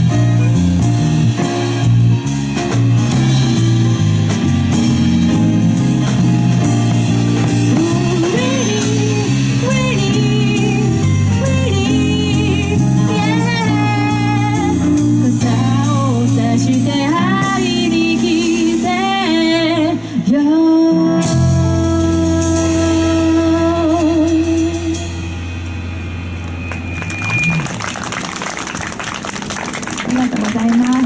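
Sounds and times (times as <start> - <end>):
live band playing: 0.0 - 31.0
woman singing with vibrato: 7.7 - 25.3.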